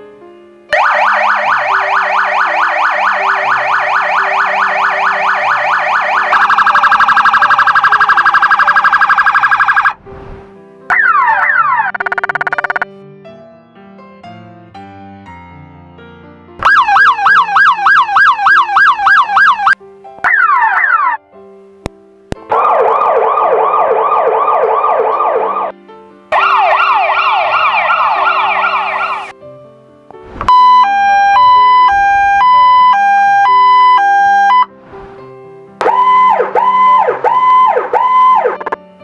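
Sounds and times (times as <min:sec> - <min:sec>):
background music: 0:00.0 - 0:39.0
synthetic emergency sirens: 0:00.7 - 0:10.0, 0:10.9 - 0:12.8, 0:16.6 - 0:21.2, 0:22.5 - 0:25.7, 0:26.3 - 0:29.3, 0:30.5 - 0:34.7, 0:35.8 - 0:38.8.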